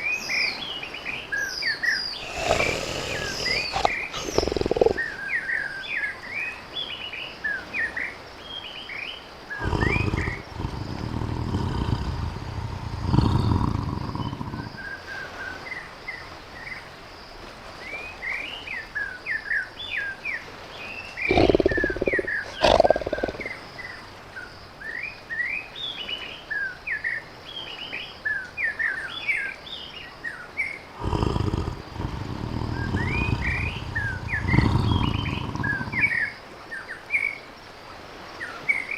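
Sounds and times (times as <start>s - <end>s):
birds chirping: 2.0s - 5.2s, 9.5s - 14.9s, 21.1s - 23.6s, 31.0s - 36.4s
tiger growling and roaring: 2.2s - 5.1s, 9.5s - 14.9s, 21.2s - 23.6s, 31.0s - 36.3s.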